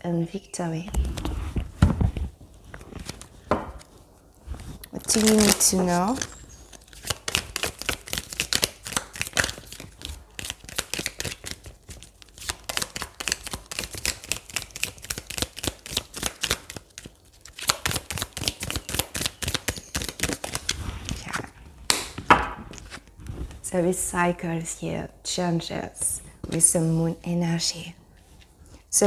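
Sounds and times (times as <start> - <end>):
cards shuffling: 0.9 - 3.9, 4.6 - 23.5.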